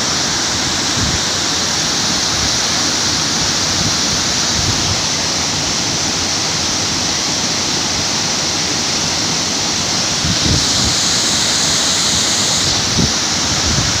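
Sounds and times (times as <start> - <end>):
waterfall roaring: 0.0 - 14.0
wind buffeting microphone: 10.2 - 11.2, 12.0 - 14.0.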